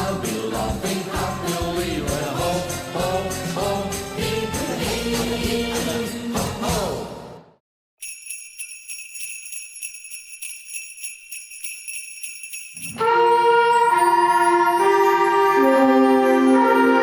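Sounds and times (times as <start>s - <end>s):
sleigh bells jingling: 8.0s - 17.0s.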